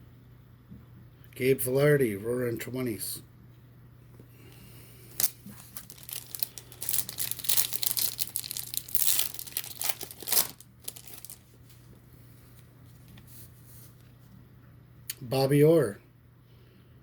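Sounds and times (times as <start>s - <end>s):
plastic packaging crinkling: 5.1s - 12.0s.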